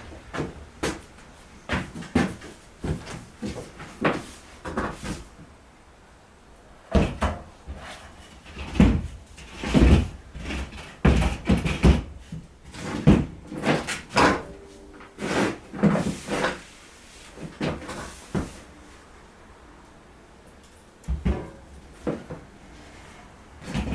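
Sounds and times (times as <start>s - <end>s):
irregular knocks and clunks: 8.4s - 14.3s.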